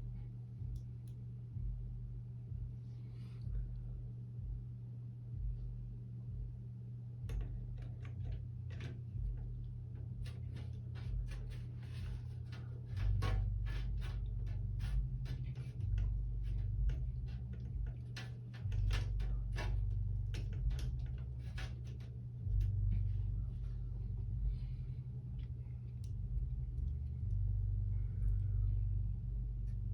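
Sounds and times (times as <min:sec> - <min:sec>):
steady low hum: 0:00.0 - 0:29.9
metal scrapes: 0:10.2 - 0:23.4.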